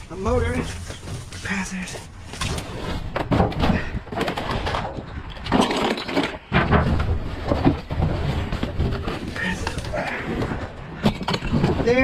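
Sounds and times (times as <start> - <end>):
rustling junk: 0.0 - 12.0
metal parts clunking: 3.2 - 12.0.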